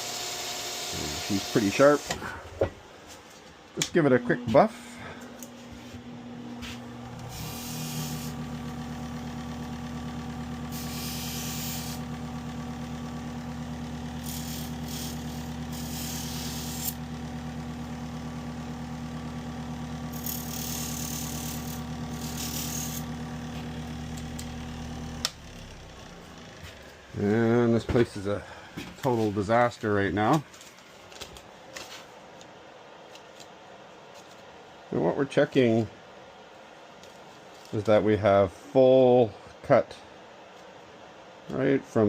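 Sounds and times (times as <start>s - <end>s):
buffing machine motor hum: 0.0s - 2.4s, 3.8s - 27.1s
blade hissing on buff: 7.3s - 8.5s, 10.7s - 12.1s, 14.1s - 17.0s
motor switch click: 25.2s - 25.5s.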